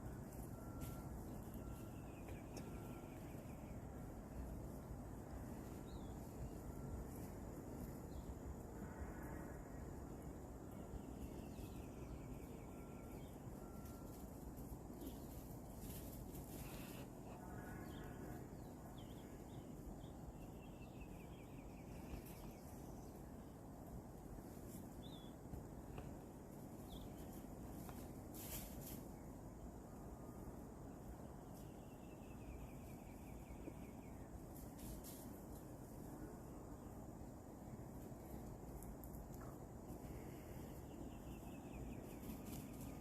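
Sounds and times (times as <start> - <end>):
faint bird chirps: 0.0 - 9.2, 9.8 - 23.6, 39.3 - 43.0
low background hiss: 0.0 - 43.0
outdoor background noise: 0.0 - 43.0.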